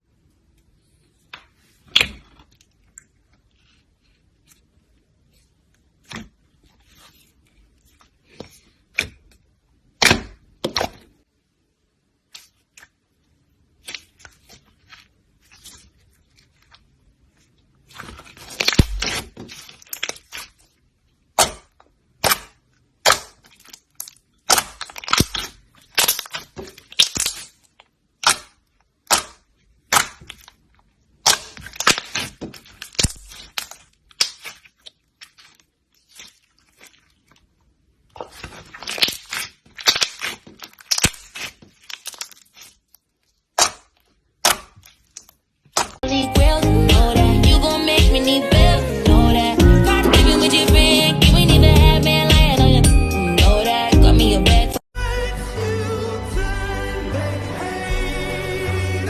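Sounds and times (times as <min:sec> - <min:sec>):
sharp cracks and snaps: 0:18.0 - 0:20.7, 0:21.4 - 0:36.9, 0:38.3 - 0:46.0.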